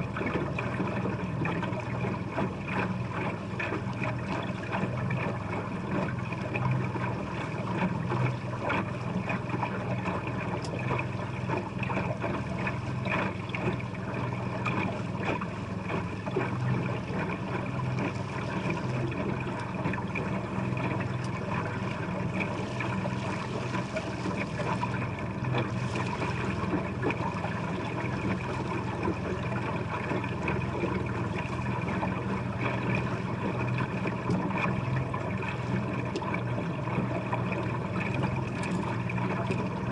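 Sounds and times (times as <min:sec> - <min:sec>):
boat motor humming: 0:00.0 - 0:39.9
water noise: 0:00.0 - 0:39.9.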